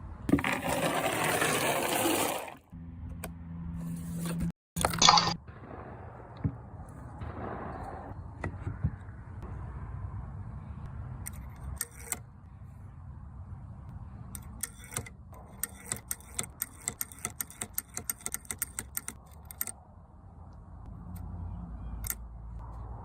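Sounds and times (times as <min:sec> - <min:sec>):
steady low rumble: 0:05.4 - 0:11.3.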